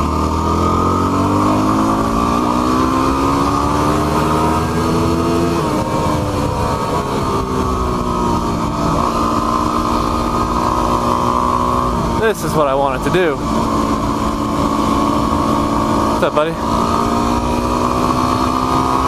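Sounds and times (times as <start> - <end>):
motorcycle engine: 0.0 - 19.0.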